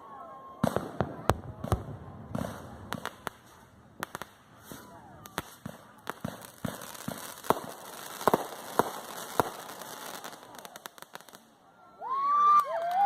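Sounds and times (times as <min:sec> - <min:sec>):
people shouting and cheering: 0:00.0 - 0:05.5, 0:09.7 - 0:13.0
loud firework bangs: 0:00.6 - 0:11.4
fireworks popping and crackling: 0:00.6 - 0:11.6.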